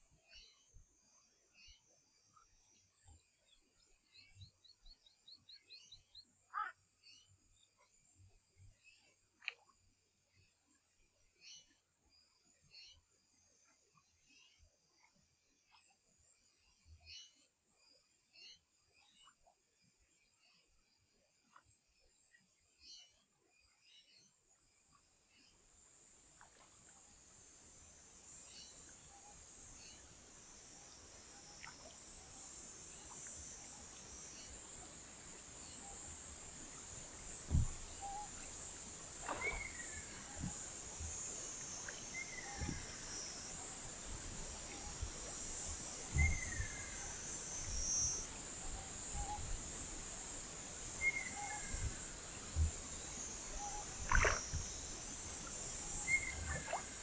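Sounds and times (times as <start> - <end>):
high-pitched insect chorus: 26.4 - 57.0
kingfisher falling whistled call: 35.1 - 43.6, 55.8 - 57.0.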